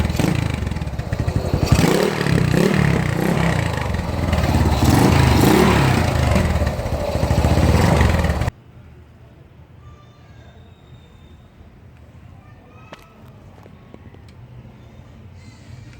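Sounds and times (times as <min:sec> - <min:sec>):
motorcycle engine revving: 0:00.0 - 0:08.6
faint background noise: 0:00.0 - 0:15.9.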